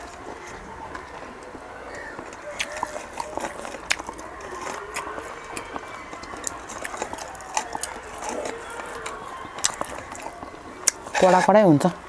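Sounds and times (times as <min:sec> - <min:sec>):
close-up chewing with wet smacks: 0:00.0 - 0:12.0.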